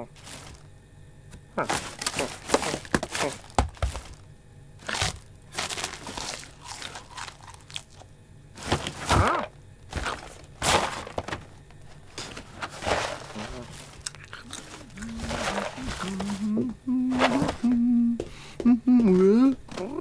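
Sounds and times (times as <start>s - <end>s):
cartoon cracks and crunches: 1.6s - 4.2s, 4.8s - 11.8s.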